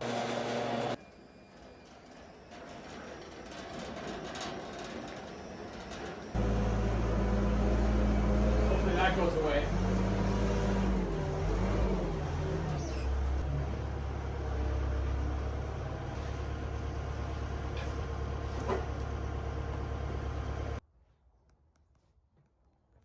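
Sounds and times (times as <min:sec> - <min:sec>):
sawmill mechanical drone: 0:00.0 - 0:20.8.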